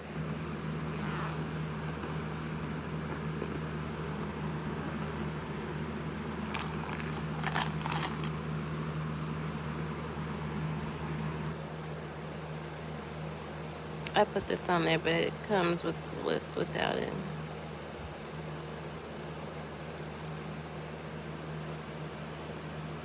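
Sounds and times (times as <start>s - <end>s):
rotary tool motor humming: 0.0s - 11.4s
handling clicks and taps: 0.3s - 5.6s, 6.3s - 8.4s.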